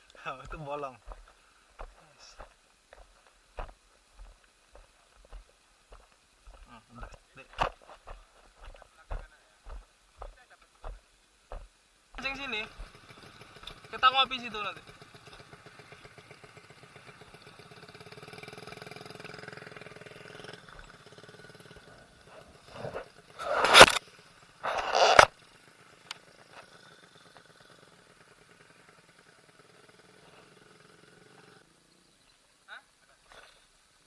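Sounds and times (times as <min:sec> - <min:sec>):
small engine humming: 0:08.6 - 0:31.7
short rushing bursts: 0:23.4 - 0:24.0.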